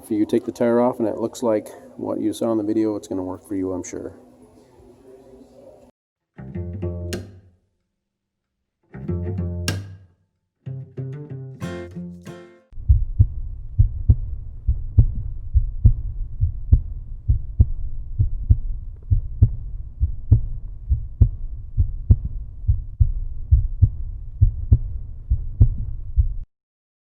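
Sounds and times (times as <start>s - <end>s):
deep thudding beat: 12.7s - 26.5s
low rumble: 12.8s - 26.5s.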